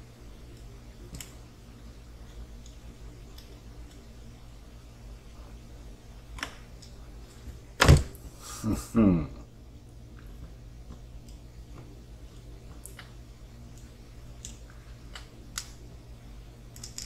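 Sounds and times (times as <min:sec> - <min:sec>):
small parts clicking: 0:16.7 - 0:17.0.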